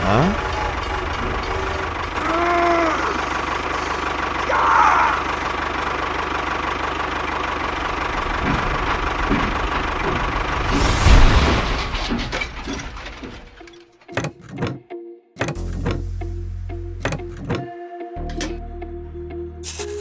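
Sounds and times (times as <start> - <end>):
engine knocking rumble: 0.0 - 13.6.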